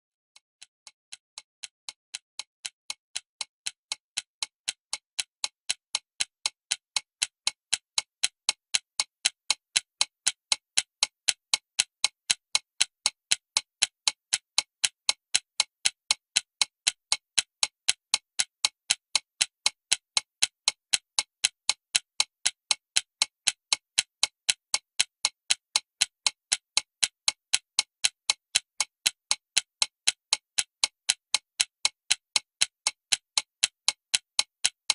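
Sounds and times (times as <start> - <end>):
alarm clock ticking: 14.8 - 34.9.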